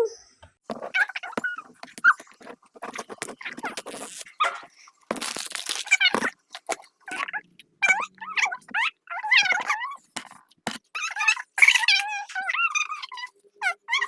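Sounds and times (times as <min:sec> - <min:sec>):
packaging crinkling and tearing: 0:00.7 - 0:06.9.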